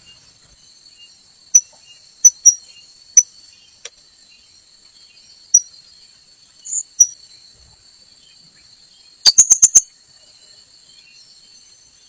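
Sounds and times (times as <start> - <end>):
insects droning: 0.0 - 12.0
parrot chirping: 6.7 - 7.1, 9.3 - 9.8.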